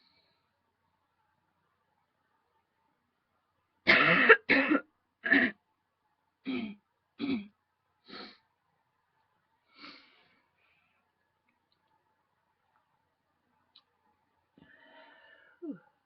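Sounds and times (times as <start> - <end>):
woman coughing: 3.9 - 5.6.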